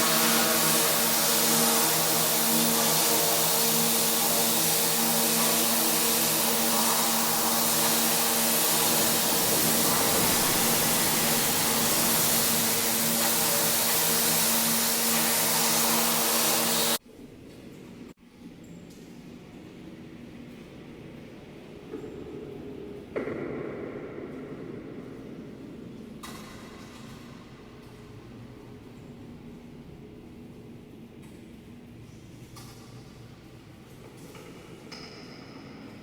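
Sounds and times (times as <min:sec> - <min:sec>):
high-pressure water spray hissing: 0:00.0 - 0:17.0
pressure washer motor hum: 0:00.0 - 0:17.0.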